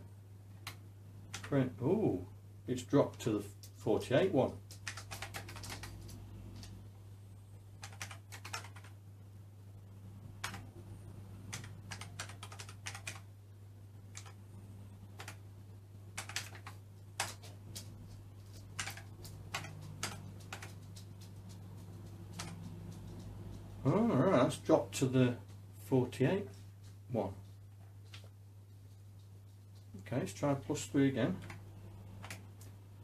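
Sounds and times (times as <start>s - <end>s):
steady low hum: 0.0s - 33.0s
keyboard keys clicking: 4.7s - 6.8s, 7.8s - 8.9s, 10.4s - 10.6s, 11.5s - 13.2s, 14.1s - 14.4s, 15.2s - 15.4s, 16.2s - 23.8s.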